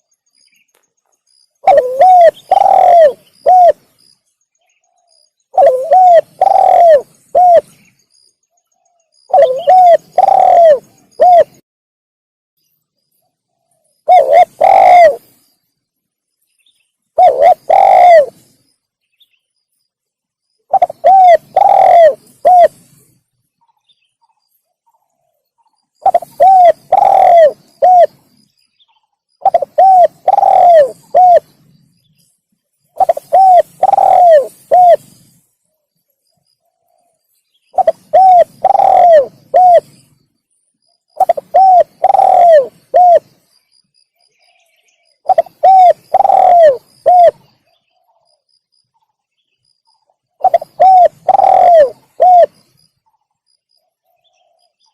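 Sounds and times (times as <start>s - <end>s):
dove cooing: 1.6s - 3.9s, 4.9s - 7.8s, 9.3s - 11.6s, 14.0s - 15.4s, 17.2s - 18.6s, 20.7s - 23.0s, 26.0s - 28.4s, 29.4s - 31.6s, 33.0s - 35.4s, 37.8s - 40.0s, 41.2s - 43.4s, 45.2s - 48.1s, 50.4s - 52.6s.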